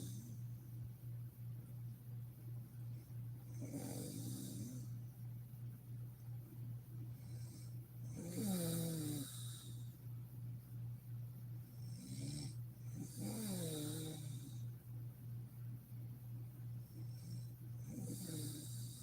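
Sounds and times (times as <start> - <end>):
steady low hum: 0.0 - 19.0
woman snoring: 3.6 - 4.9, 7.3 - 9.9, 11.8 - 14.6, 17.1 - 19.0
faint breaths: 7.0 - 10.1, 16.9 - 19.0.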